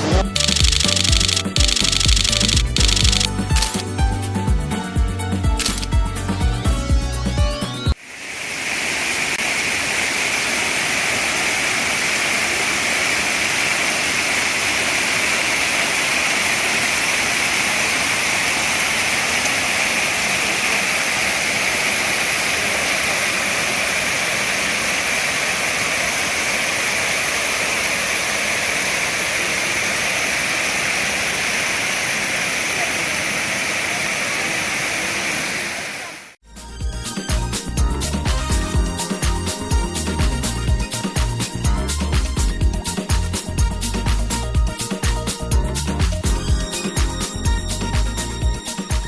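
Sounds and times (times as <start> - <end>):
waterfall rushing into pool: 7.9 - 36.4.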